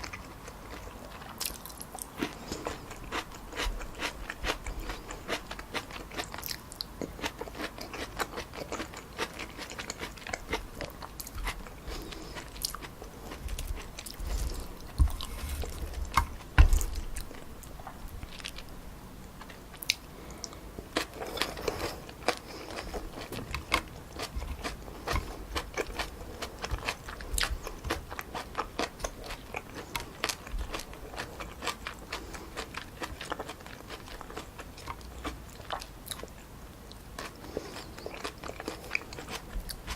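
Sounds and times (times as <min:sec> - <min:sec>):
low thump: 0:16.6 - 0:17.0.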